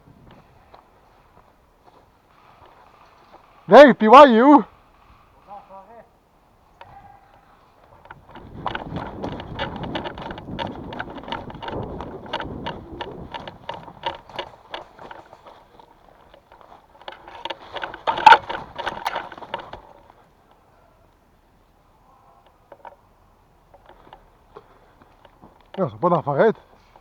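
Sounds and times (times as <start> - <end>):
wind on the microphone: 0.0 - 0.8, 8.0 - 14.5
running footsteps: 6.8 - 20.2
shuffling and handling noise: 6.8 - 20.8
gear rattling: 7.8 - 20.2.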